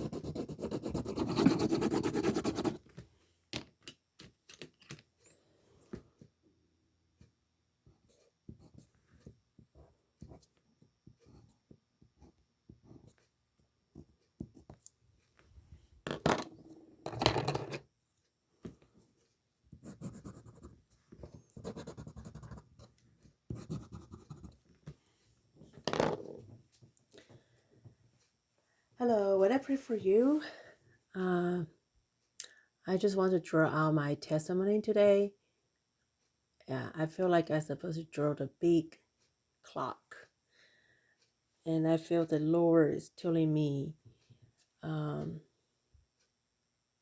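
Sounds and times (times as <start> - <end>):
pen scratching on paper: 0.0 - 2.8, 19.8 - 22.9, 23.5 - 24.6.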